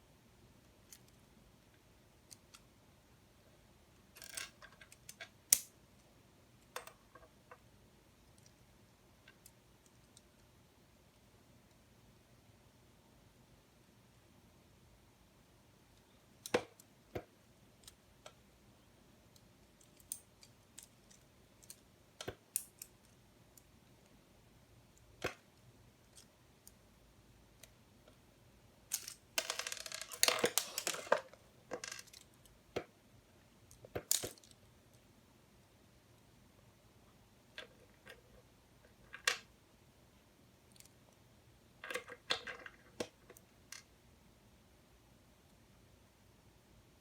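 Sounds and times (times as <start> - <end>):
plastic pieces clicking and clattering: 28.9 - 32.5.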